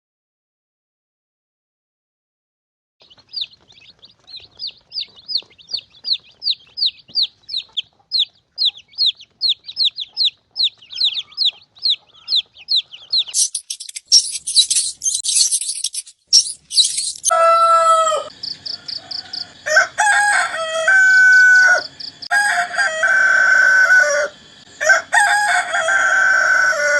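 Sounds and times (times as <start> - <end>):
small animal squeaky chirps: 4.3 - 17.3.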